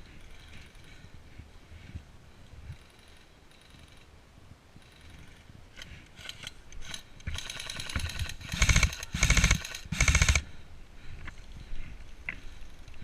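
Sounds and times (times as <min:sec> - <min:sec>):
airsoft gun firing bursts: 0:06.8 - 0:10.5.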